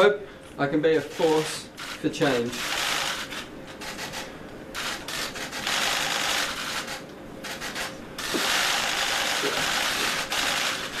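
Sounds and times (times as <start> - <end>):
camera shutters clicking: 2.6 - 10.9.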